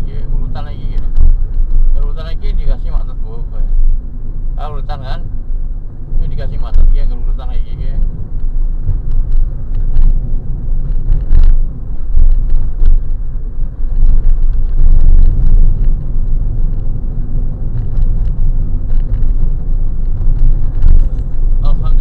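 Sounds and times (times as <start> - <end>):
car engine and road rumble: 0.0 - 22.0
small knocks and rattles: 17.6 - 21.6.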